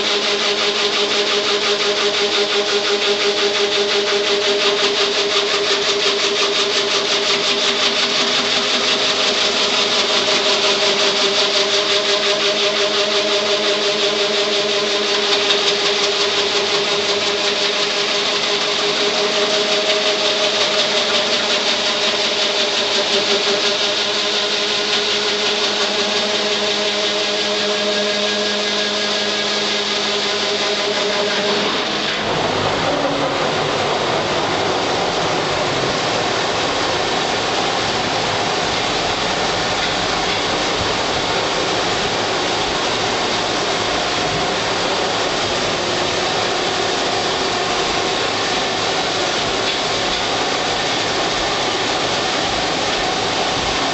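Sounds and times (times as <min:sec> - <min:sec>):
cutting tool scraping wood: 0:00.0 - 0:33.1
lathe motor humming: 0:00.0 - 0:53.9.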